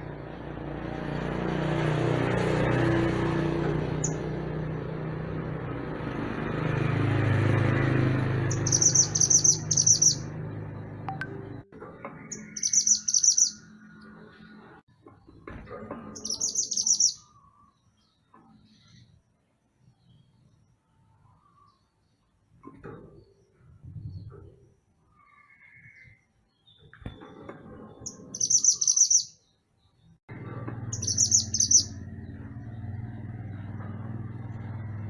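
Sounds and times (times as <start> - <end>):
songbird trilling: 4.0 - 4.3, 8.5 - 10.3, 12.2 - 13.7, 16.2 - 17.7, 28.1 - 29.4, 30.9 - 32.0.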